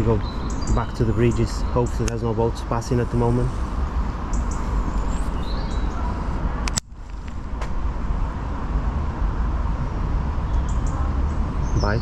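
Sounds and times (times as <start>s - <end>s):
low urban rumble: 0.0s - 12.0s
sharp clicks: 2.0s - 2.2s.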